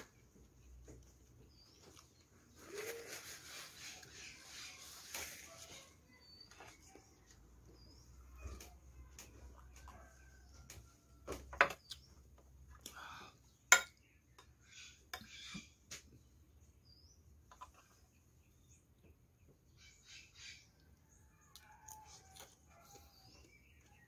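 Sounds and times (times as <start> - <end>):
cutlery clinking on a plate: 13.7 - 14.0.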